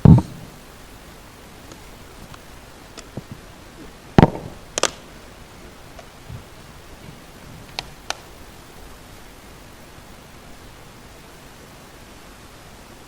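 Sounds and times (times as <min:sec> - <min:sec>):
room hiss: 0:00.0 - 0:13.0
faint clicks: 0:07.7 - 0:08.3.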